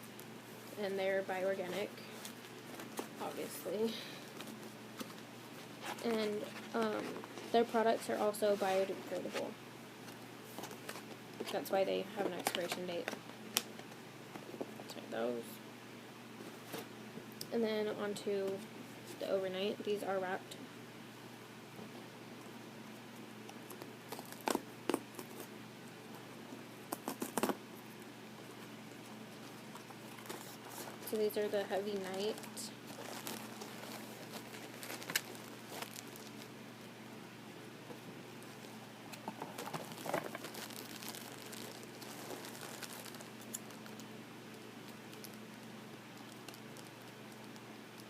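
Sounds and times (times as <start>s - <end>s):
steady low hum: 0.0s - 48.0s
wrapper crinkling: 23.7s - 25.5s, 29.4s - 36.6s, 38.4s - 44.1s, 44.8s - 48.0s.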